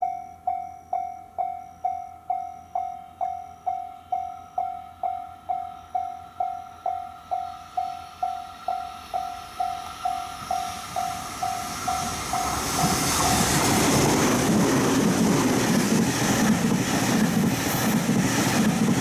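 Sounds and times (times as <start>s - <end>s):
level-crossing warning bell: 0.0s - 14.3s
approaching freight train: 0.0s - 19.0s.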